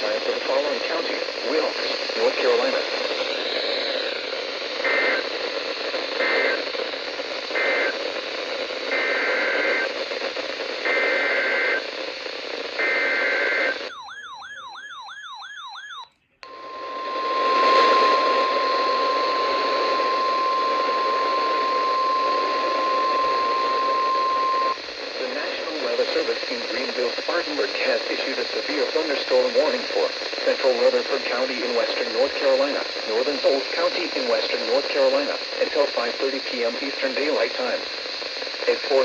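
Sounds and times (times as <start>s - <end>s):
radio static hiss: 0.0s - 13.9s, 16.4s - 39.0s
steady warning alarm tone: 12.8s - 24.9s.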